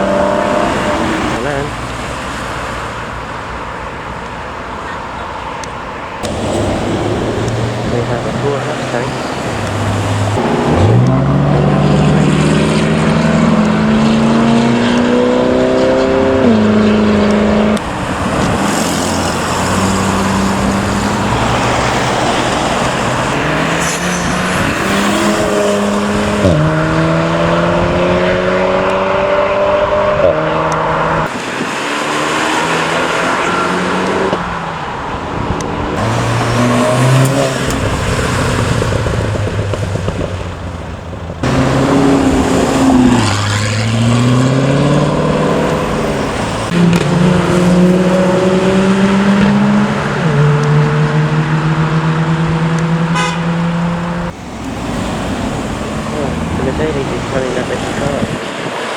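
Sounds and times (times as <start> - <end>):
car engines accelerating: 0.0 - 58.9.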